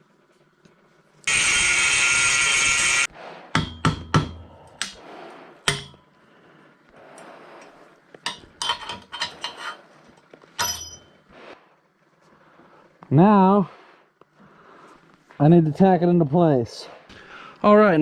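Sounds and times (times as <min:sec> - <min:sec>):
steel parts knocking and clinking: 0:05.7 - 0:06.1, 0:08.2 - 0:09.8, 0:10.6 - 0:11.2.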